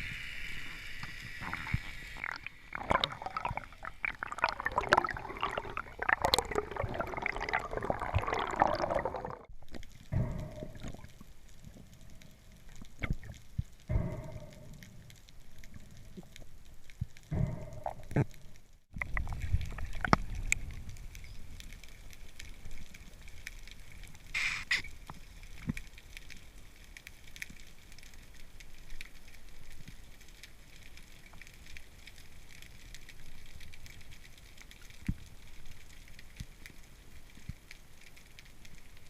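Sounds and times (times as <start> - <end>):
underwater clicks crackling: 1.0 - 39.0
brief hiss: 24.4 - 24.9.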